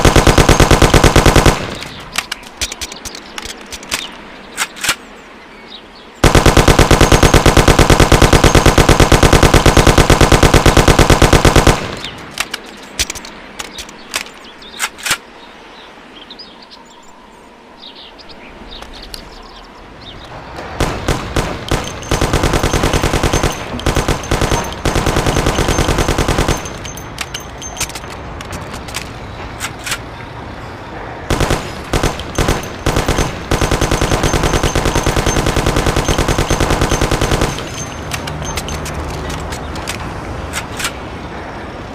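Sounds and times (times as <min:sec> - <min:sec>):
submachine gun firing: 0:00.0 - 0:02.1, 0:06.2 - 0:12.3, 0:20.8 - 0:27.7, 0:31.3 - 0:38.7.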